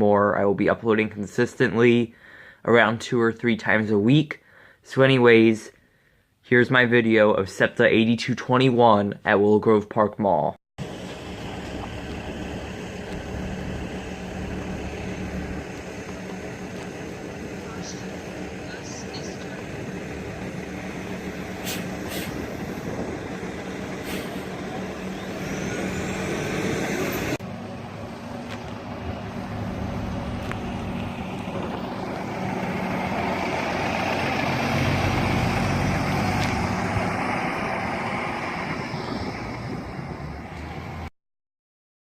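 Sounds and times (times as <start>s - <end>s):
bus engine hum: 10.8s - 41.1s.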